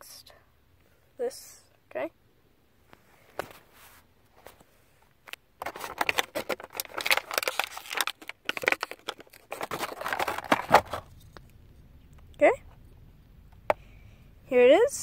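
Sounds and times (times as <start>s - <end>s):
plastic toy pieces and packaging crinkling: 5.2s - 11.6s.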